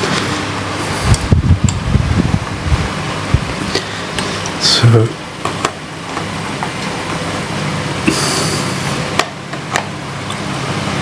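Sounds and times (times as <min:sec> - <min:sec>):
background hum and hiss: 0:00.0 - 0:11.0.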